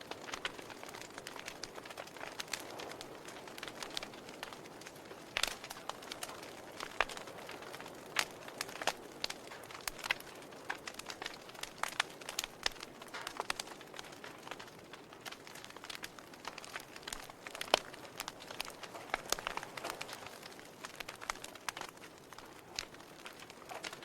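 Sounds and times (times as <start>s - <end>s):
wood fire crackling and popping: 0.0s - 24.0s.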